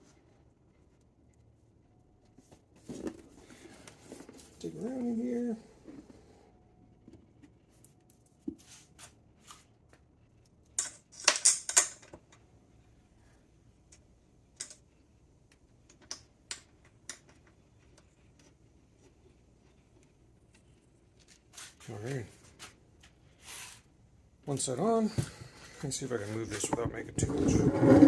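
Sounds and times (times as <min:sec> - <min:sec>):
rustling and clattering: 0:02.2 - 0:04.8, 0:25.2 - 0:28.0
small parts rattling: 0:10.5 - 0:12.2.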